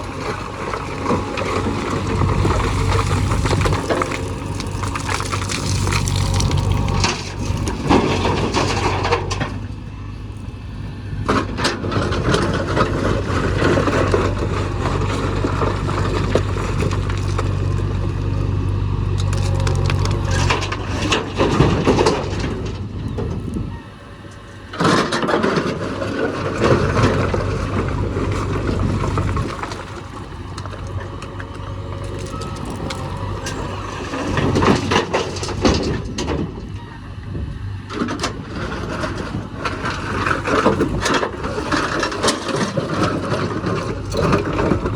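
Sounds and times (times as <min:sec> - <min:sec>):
diesel engine running: 0:00.0 - 0:44.9
material scraping and crashing: 0:01.0 - 0:09.6, 0:19.2 - 0:22.8.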